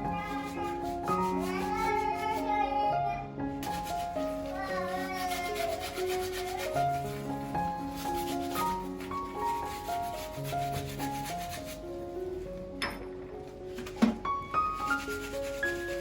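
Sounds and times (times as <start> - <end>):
soft melodic background music: 0.0 - 16.0
hand scrubbing back and forth: 0.2 - 2.6, 3.6 - 12.1, 14.6 - 16.0.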